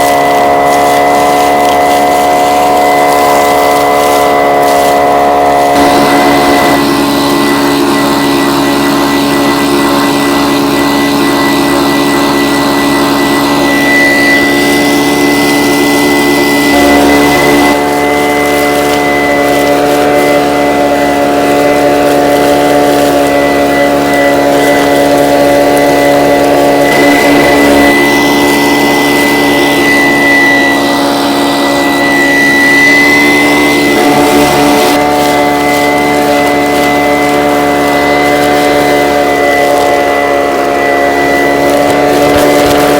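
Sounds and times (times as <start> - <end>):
vacuum motor drone with whine: 0.0 - 42.9
gravel being sucked: 13.8 - 42.9.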